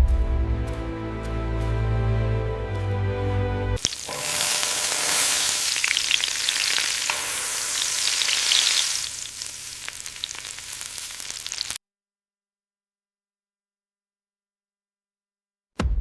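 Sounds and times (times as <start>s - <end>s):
dense crackling hiss: 3.8s - 11.8s.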